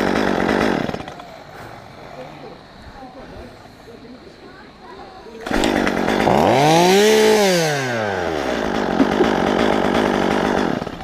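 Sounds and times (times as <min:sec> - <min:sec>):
chainsaw cutting and revving: 0:00.0 - 0:01.7, 0:05.4 - 0:11.0.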